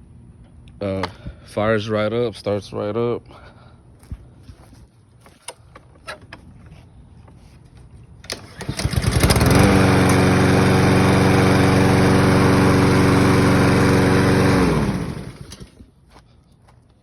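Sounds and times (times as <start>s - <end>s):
lawn mower engine starting and running: 8.2s - 16.0s.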